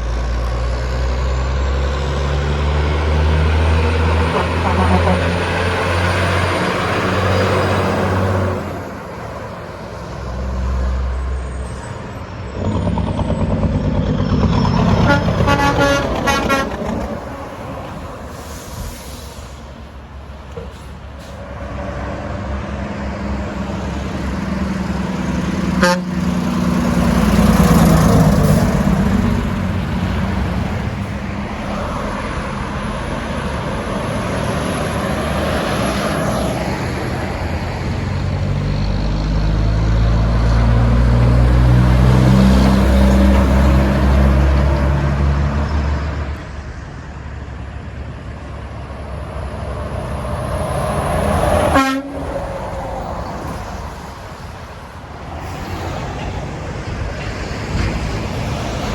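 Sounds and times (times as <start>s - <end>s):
diesel engines: 0.0s - 58.9s
tyre noise on road: 0.0s - 58.9s
truck train horn chord: 4.2s - 5.6s, 14.5s - 17.6s, 25.7s - 26.4s, 51.6s - 52.5s.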